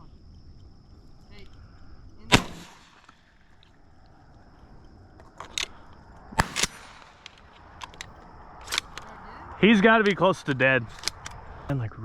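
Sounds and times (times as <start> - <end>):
shotgun shot: 2.3 - 3.4, 6.4 - 7.4
sharp cracks: 2.3 - 4.2, 5.2 - 11.4.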